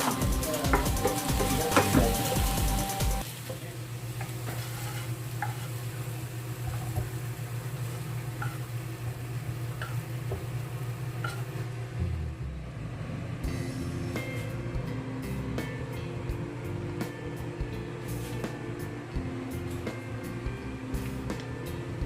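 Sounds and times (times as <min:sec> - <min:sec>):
chicken sizzling in a frying pan: 0:00.0 - 0:12.0
utensil scraping a pan: 0:04.2 - 0:05.8
steady low hum: 0:05.2 - 0:22.0.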